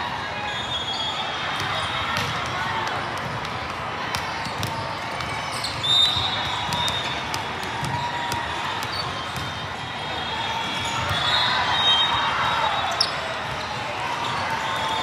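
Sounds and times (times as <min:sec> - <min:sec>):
shoe squeaks on court floor: 0:05.4 - 0:07.2, 0:12.9 - 0:13.2.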